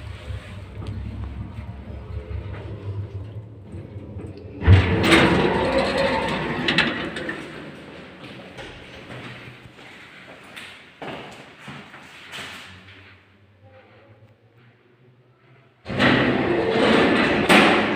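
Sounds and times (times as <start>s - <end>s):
doors rattling while moving: 0.0s - 9.6s
lift humming: 0.0s - 9.6s.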